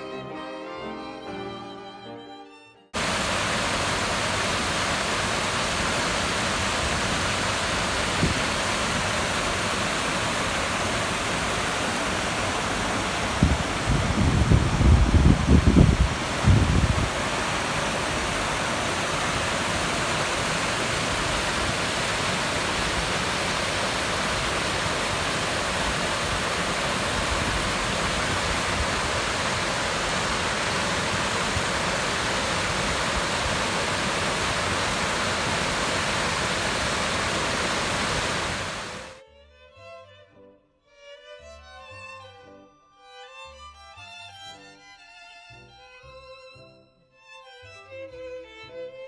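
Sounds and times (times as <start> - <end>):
rushing water roar: 3.0 - 39.2.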